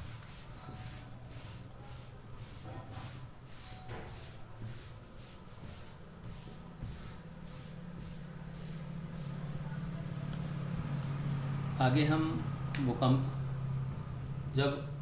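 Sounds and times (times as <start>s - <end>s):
rhythmic scratching strokes: 6.3s - 12.5s
low steady hum: 6.3s - 15.0s.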